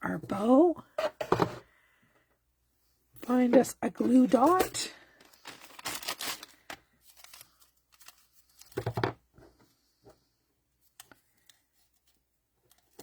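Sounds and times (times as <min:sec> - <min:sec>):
paper and ribbon rustling: 0:03.9 - 0:08.9.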